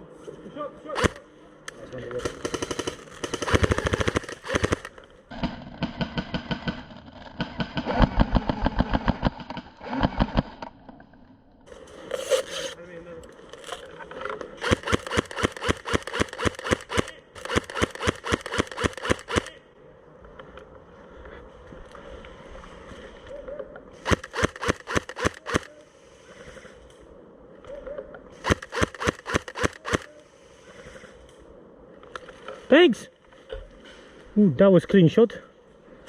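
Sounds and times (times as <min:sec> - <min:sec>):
airsoft gun firing: 0:01.0 - 0:01.2, 0:02.1 - 0:10.6, 0:14.6 - 0:19.6, 0:24.0 - 0:25.8, 0:28.4 - 0:30.2.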